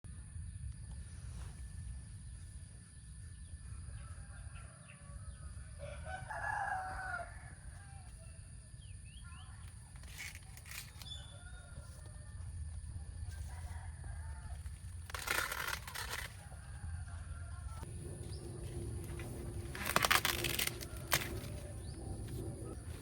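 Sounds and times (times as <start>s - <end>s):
rooster crowing: 3.9s - 8.1s
steady low rumble: 12.3s - 23.0s.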